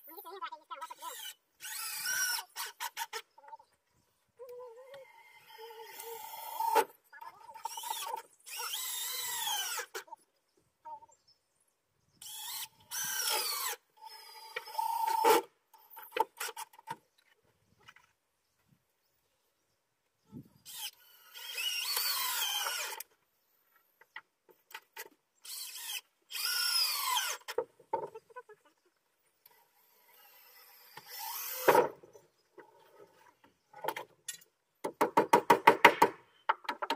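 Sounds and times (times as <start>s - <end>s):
power drill driving screws: 1.0s - 3.2s, 7.6s - 10.0s, 12.2s - 15.5s, 20.6s - 23.1s, 25.4s - 27.6s, 29.5s - 32.0s.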